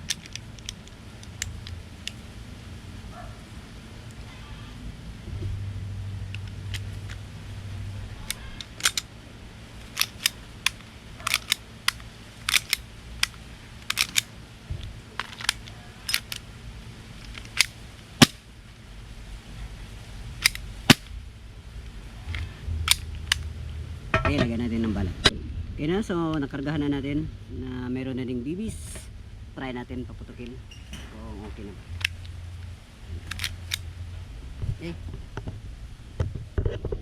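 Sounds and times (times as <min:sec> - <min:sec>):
pistol plastic and metal clicks: 0:00.0 - 0:02.2, 0:08.2 - 0:09.1, 0:09.8 - 0:14.3, 0:15.2 - 0:16.5, 0:17.2 - 0:18.5, 0:20.4 - 0:21.2, 0:22.3 - 0:23.5, 0:32.0 - 0:33.9.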